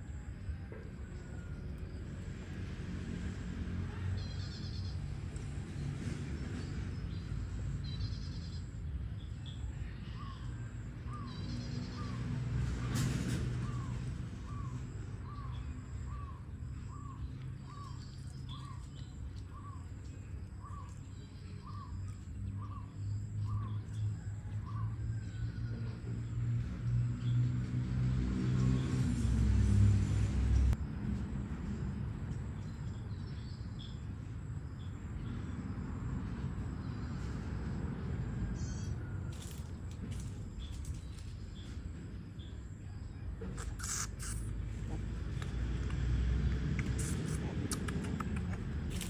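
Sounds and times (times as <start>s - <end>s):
birds chirping: 43.4s - 49.0s
repeated short bird calls: 43.4s - 49.0s.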